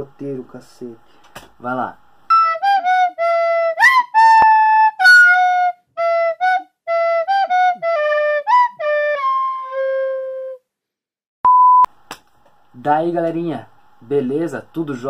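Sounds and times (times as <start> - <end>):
flute-like slow melody: 2.3 - 10.6.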